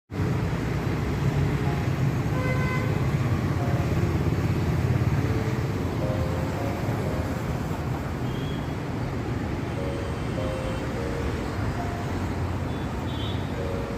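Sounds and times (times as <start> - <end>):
road traffic noise: 0.1 - 13.9
vehicle horn toots: 2.4 - 3.0, 12.7 - 13.6.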